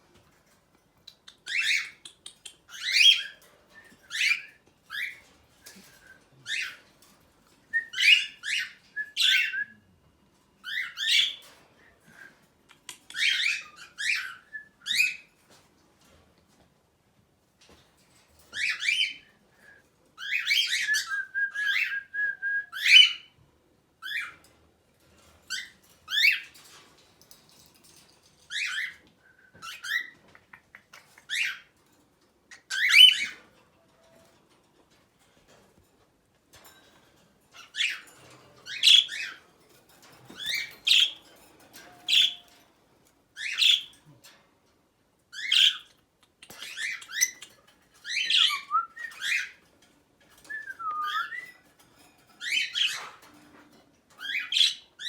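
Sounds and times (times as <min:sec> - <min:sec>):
parrots chirping and squawking: 0:12.8 - 0:15.3, 0:29.7 - 0:31.8, 0:32.5 - 0:33.4, 0:37.5 - 0:39.5, 0:40.3 - 0:42.6, 0:43.4 - 0:44.0, 0:45.3 - 0:49.6, 0:51.1 - 0:53.5, 0:54.1 - 0:55.0.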